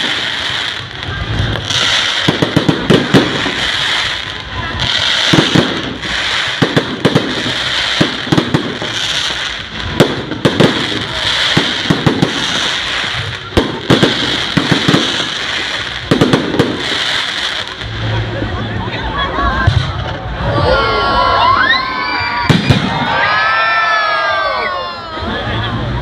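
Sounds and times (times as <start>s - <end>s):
crackling hiss: 0.0s - 18.4s
fireworks bangs and pops: 0.0s - 18.4s, 19.6s - 20.4s, 22.5s - 23.2s.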